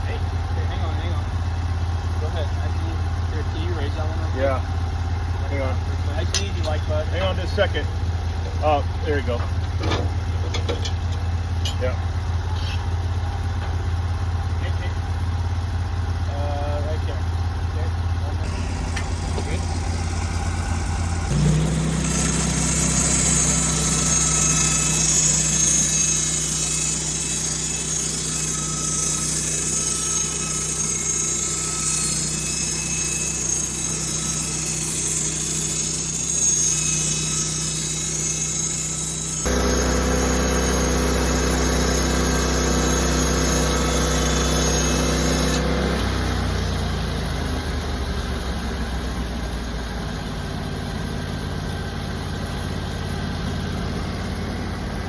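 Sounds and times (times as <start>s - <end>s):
sawmill engine running: 0.0s - 55.0s
saw cutting log: 18.4s - 46.6s.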